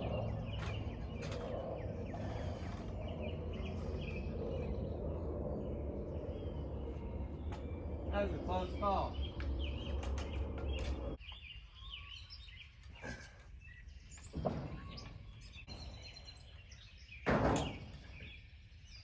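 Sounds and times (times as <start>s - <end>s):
low rumble: 0.0s - 11.2s
small birds chirping: 0.0s - 19.0s.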